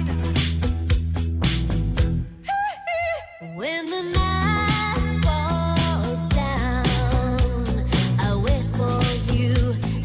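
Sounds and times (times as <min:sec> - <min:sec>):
funk music with bass line: 0:00.0 - 0:02.5, 0:03.6 - 0:10.0.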